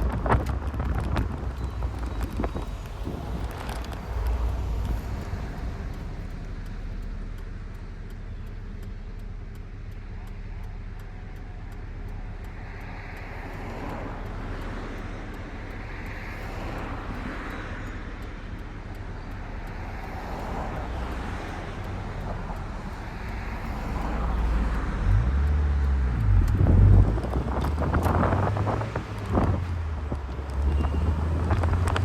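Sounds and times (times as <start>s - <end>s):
wind buffeting microphone: 0.0s - 6.6s, 19.9s - 32.0s
car engine running: 0.0s - 14.6s, 18.5s - 32.0s
road and wind noise: 0.0s - 32.0s.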